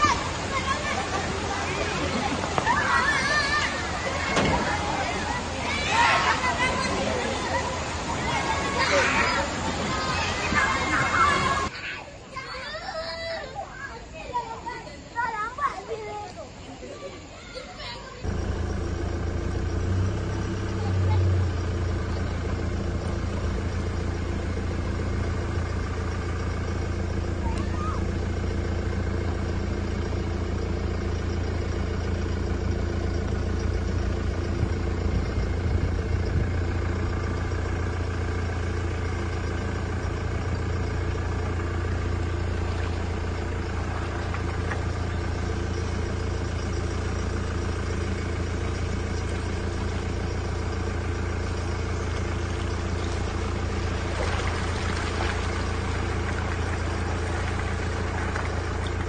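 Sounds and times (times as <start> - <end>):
engine running steadily: 0.0 - 59.0.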